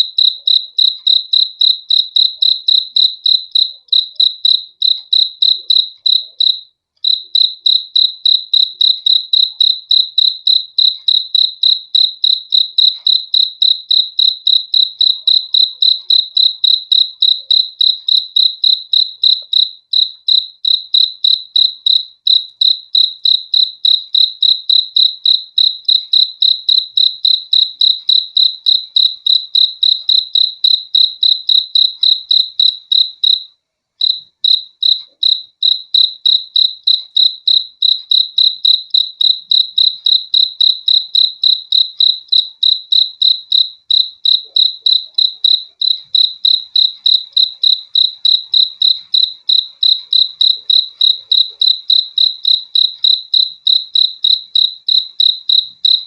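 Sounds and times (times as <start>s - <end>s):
cricket chirping: 0.0s - 56.0s.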